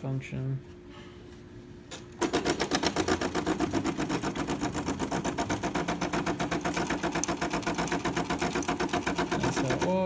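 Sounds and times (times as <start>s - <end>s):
espresso machine pump buzzing: 2.2s - 10.0s.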